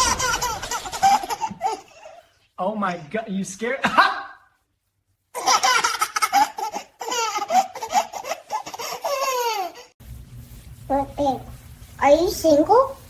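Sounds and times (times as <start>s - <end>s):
baby laughing: 0.0s - 2.2s, 5.4s - 10.0s.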